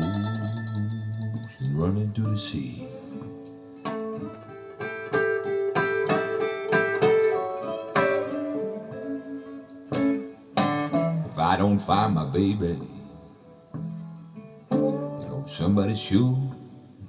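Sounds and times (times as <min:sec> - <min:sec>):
person singing: 0:00.0 - 0:03.3, 0:11.2 - 0:13.3, 0:15.1 - 0:16.8
acoustic blues guitar: 0:00.0 - 0:17.0.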